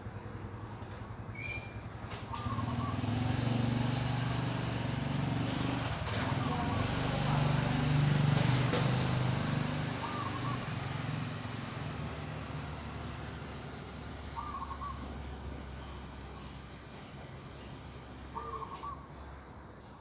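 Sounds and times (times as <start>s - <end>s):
vehicle engine passing: 2.0s - 19.0s
short bird calls: 14.3s - 15.1s, 18.3s - 19.2s.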